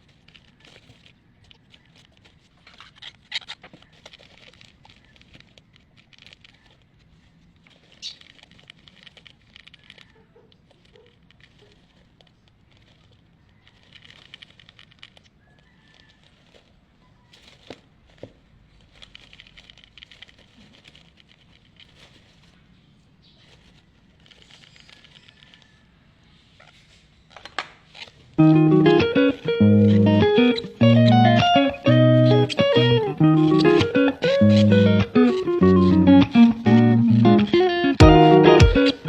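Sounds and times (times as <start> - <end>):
birds tapping and rustling: 0.0 - 39.0
faint bird chirp: 15.2 - 17.5, 22.6 - 28.1.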